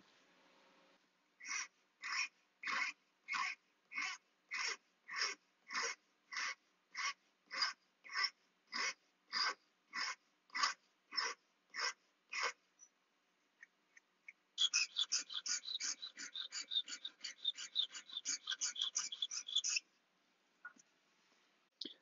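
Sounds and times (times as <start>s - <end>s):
hand file rasping on wood: 1.5s - 12.6s, 14.6s - 19.8s.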